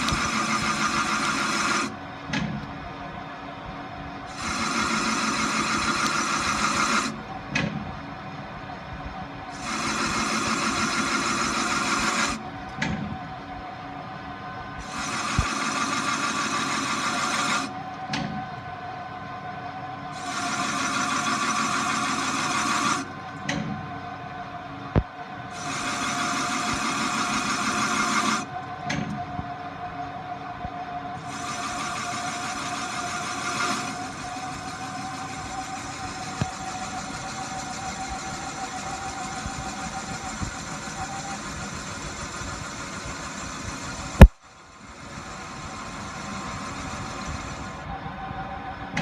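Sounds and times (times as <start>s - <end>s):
sharp clicks: 0.0s - 1.9s, 4.3s - 7.2s, 14.8s - 17.7s
hissing metal cutting: 0.0s - 2.1s, 4.3s - 7.7s, 9.5s - 12.8s, 14.8s - 17.8s, 20.1s - 23.3s, 25.5s - 28.6s, 31.2s - 47.9s
machine tool whine: 0.0s - 49.0s.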